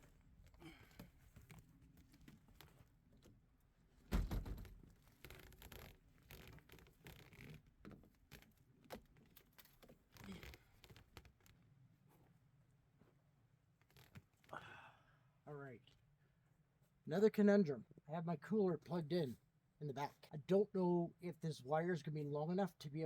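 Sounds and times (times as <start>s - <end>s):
gear scratching and rustling: 5.0s - 11.6s, 13.8s - 14.4s.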